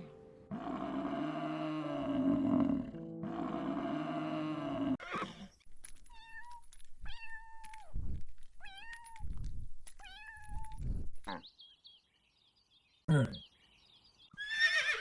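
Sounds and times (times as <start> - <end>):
deep animal sound: 0.5 - 5.4.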